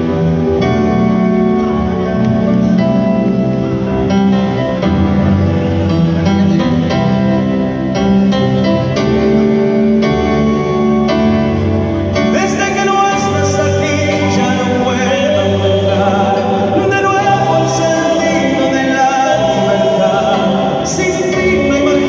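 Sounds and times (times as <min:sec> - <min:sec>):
live band playing: 0:00.0 - 0:22.0
people singing: 0:12.3 - 0:22.0.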